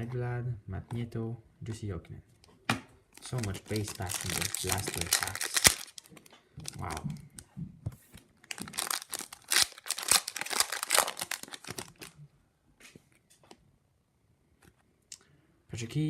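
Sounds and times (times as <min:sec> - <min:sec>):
wrapper tearing and crinkling: 0:03.2 - 0:07.1, 0:08.4 - 0:12.2.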